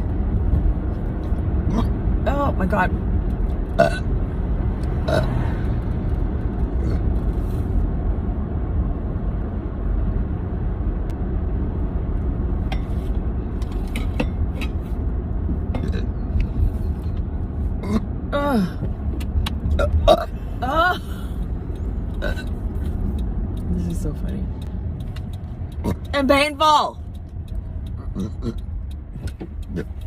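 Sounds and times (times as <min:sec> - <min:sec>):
road rumble inside car: 0:00.0 - 0:30.0
burp: 0:03.8 - 0:04.1, 0:05.0 - 0:05.4, 0:15.8 - 0:16.1, 0:17.8 - 0:18.6, 0:22.2 - 0:22.5, 0:28.0 - 0:28.6
woman hiccuping: 0:19.8 - 0:21.2.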